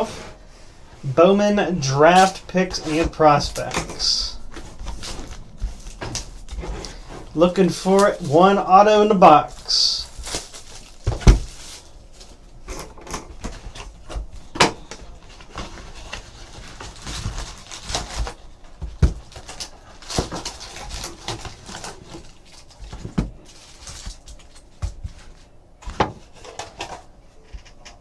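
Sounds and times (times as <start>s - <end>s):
wrappers crinkling and tearing: 1.8s - 12.6s, 14.9s - 24.8s.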